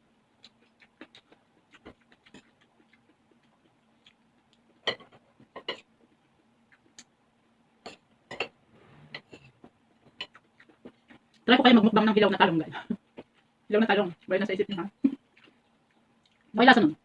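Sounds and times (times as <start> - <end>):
faint steady hum: 0.0 - 17.0
mouth clicks and smacks chewing: 0.4 - 4.8, 15.2 - 16.6.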